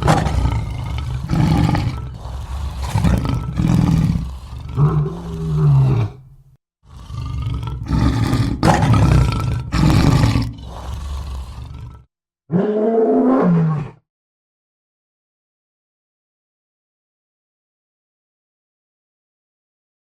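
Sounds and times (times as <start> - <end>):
lion roaring and grunting: 0.0 - 6.3, 6.9 - 14.0.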